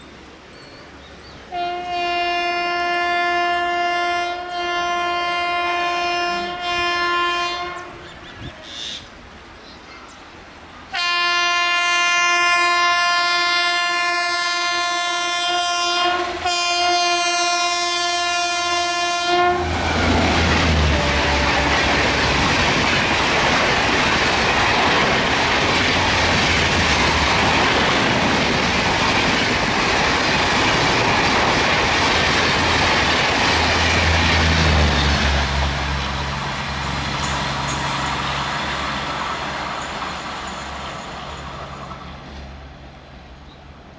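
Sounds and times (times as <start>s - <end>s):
train passing at speed: 0.0s - 43.9s
locomotive horn blasts: 1.5s - 8.5s, 10.9s - 22.4s
wheels clattering over rail joints: 19.6s - 42.6s.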